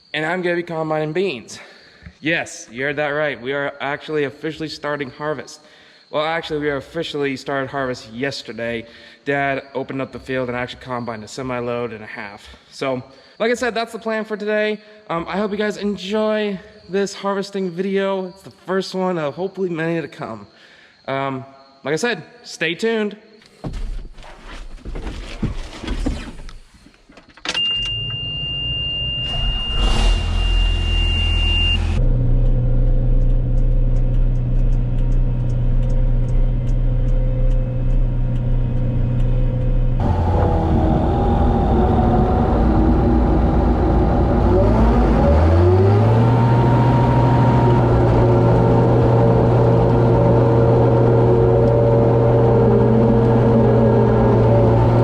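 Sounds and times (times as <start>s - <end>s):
high warning beep: 27.6s - 32.0s
diesel engine running: 29.3s - 55.0s.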